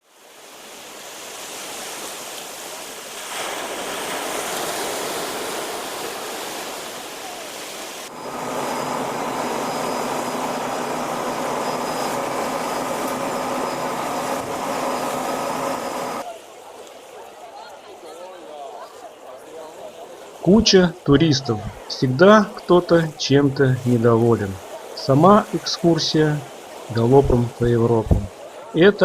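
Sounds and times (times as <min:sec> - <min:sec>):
sea: 0:00.0 - 0:29.0
wind: 0:00.0 - 0:29.0
boat engine humming: 0:08.1 - 0:16.2, 0:20.2 - 0:29.0
thin high whine: 0:08.1 - 0:16.2.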